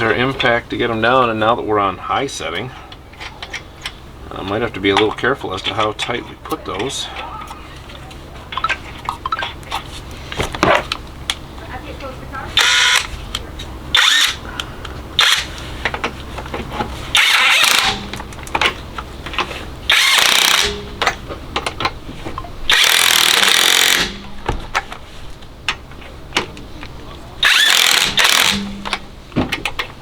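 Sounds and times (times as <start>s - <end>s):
impact wrench hammering: 17.2s - 18.8s, 19.9s - 21.8s, 22.7s - 24.6s, 27.4s - 29.7s.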